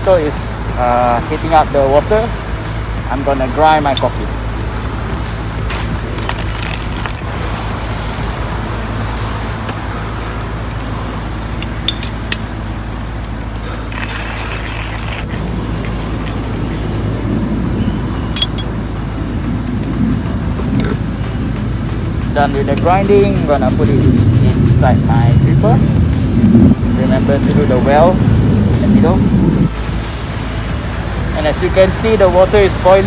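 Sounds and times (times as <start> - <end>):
sharp clinks: 11.4 - 13.3, 18.3 - 18.8.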